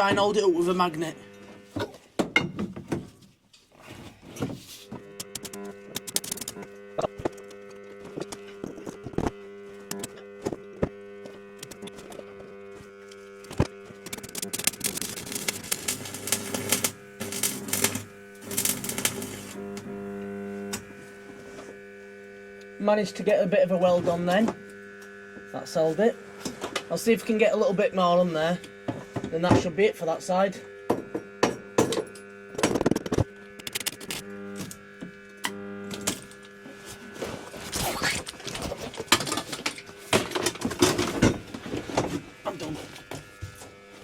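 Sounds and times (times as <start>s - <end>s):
welder electrical hum: 0.0s - 44.0s
arc welder crackling: 4.8s - 44.0s
sharp click: 5.2s - 6.6s.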